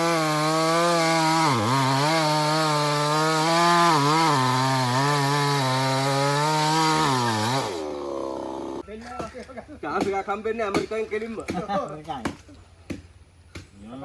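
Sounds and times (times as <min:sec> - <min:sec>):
chainsaw cutting at full throttle: 0:00.0 - 0:08.8.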